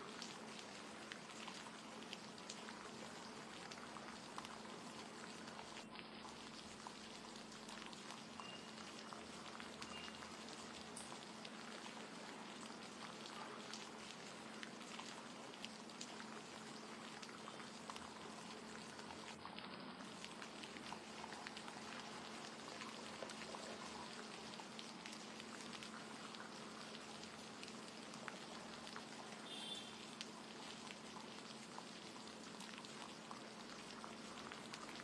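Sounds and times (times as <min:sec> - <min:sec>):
steady rain falling: 0:00.0 - 0:35.0.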